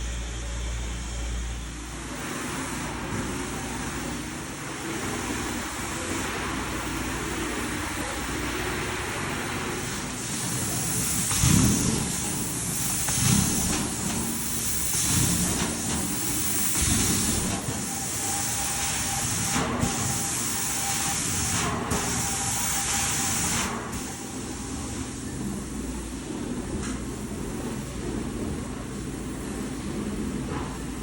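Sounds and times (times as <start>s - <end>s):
extraction wand spraying and vacuuming: 9.9s - 24.2s.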